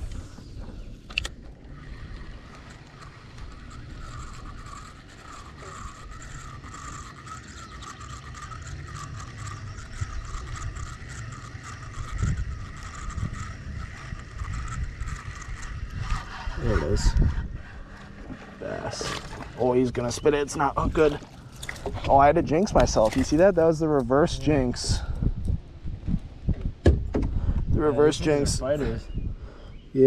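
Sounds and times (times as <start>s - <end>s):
fishing reel gear whirr: 0.0s - 25.5s
fishing reel bail click: 1.0s - 16.4s.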